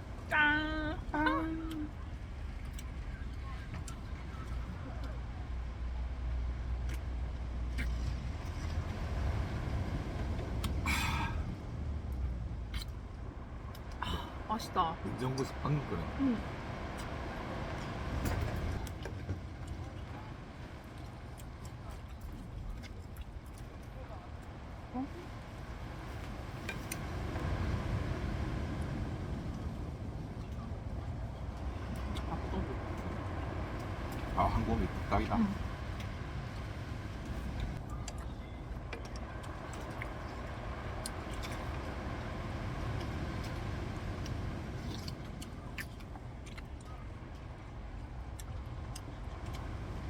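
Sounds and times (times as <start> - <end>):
strong wind rumble: 24.5 - 45.8.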